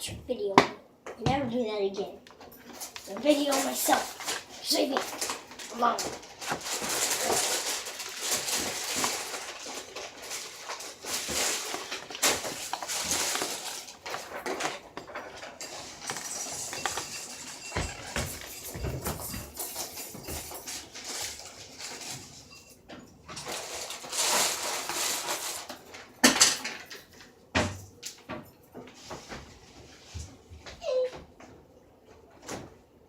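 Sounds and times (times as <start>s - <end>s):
small clinks and knocks: 2.3s - 24.3s.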